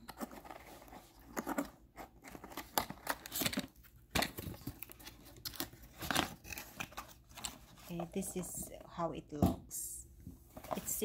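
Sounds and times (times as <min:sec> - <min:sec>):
packaging tearing and rustling: 0:00.0 - 0:08.0.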